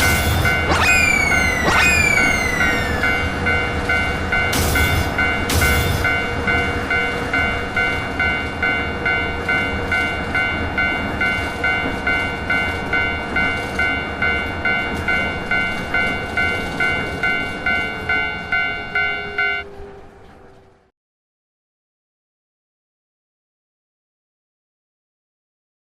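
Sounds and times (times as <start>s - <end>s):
loud bursts of noise: 0.0s - 3.4s
railroad crossing alarm ringing: 0.0s - 20.7s
low rumble of passing train: 0.0s - 20.9s.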